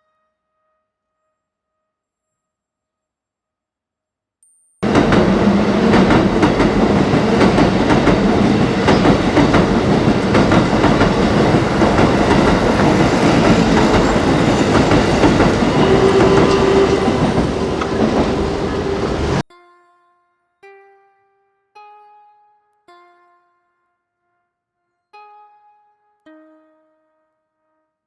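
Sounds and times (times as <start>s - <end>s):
train wheels rattling overhead: 4.8s - 19.4s.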